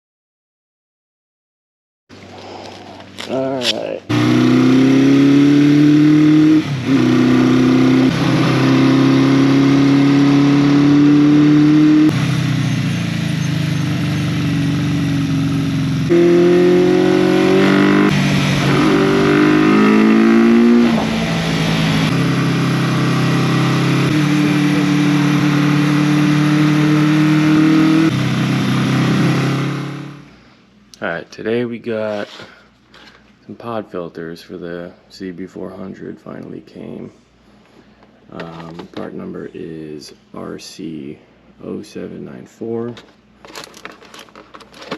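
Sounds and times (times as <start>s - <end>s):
motorcycle engine revving: 4.1s - 30.3s.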